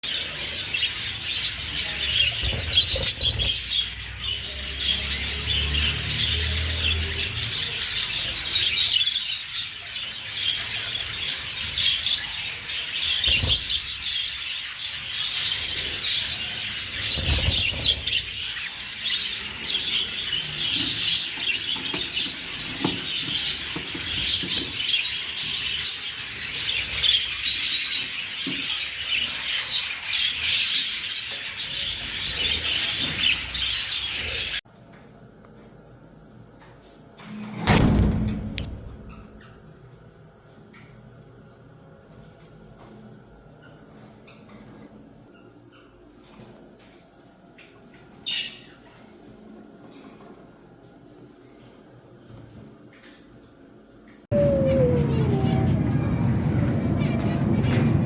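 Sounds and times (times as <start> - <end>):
small birds chirping: 0.0 - 34.6, 54.3 - 58.0.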